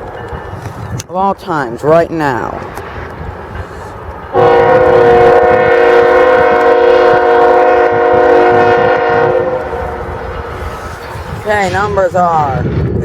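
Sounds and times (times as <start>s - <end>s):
locomotive air horn chord: 4.3s - 10.5s.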